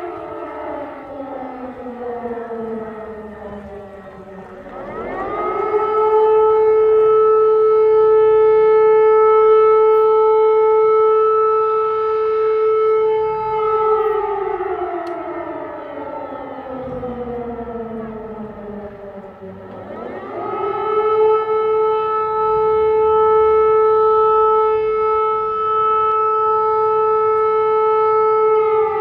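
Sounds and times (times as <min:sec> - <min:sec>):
civil defence siren: 0:00.0 - 0:29.0.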